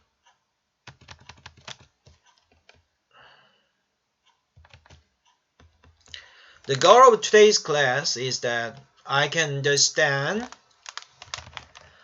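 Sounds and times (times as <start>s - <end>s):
computer keyboard clicks: 0.9s - 2.8s, 4.6s - 6.2s, 10.4s - 12.0s.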